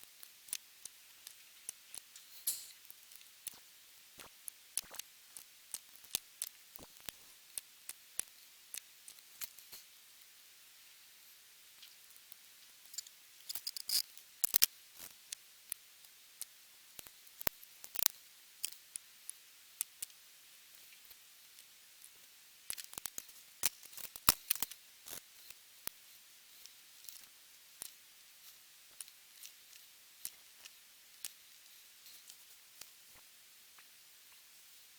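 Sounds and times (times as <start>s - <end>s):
plastic parts clicking and snipping: 13.0s - 14.7s.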